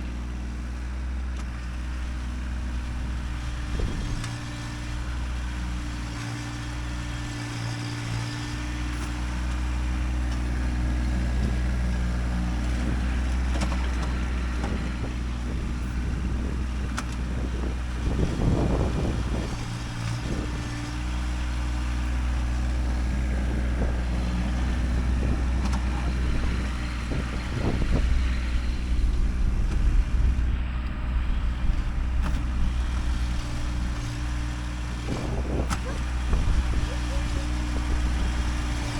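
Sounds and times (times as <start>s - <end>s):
tractor diesel engine running: 0.0s - 38.9s
engine knocks: 12.5s - 38.9s.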